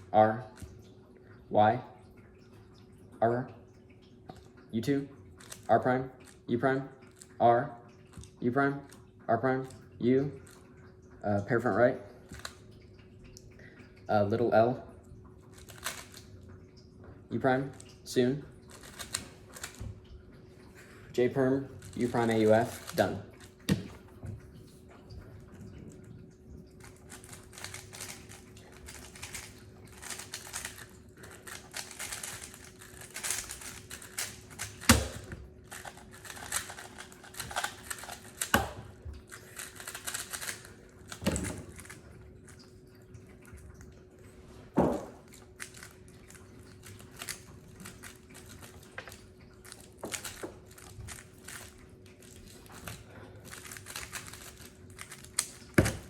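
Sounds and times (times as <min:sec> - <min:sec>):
speed cube plastic clicks: 0:15.6 - 0:16.2, 0:18.7 - 0:19.8, 0:27.0 - 0:42.0, 0:53.5 - 0:56.0.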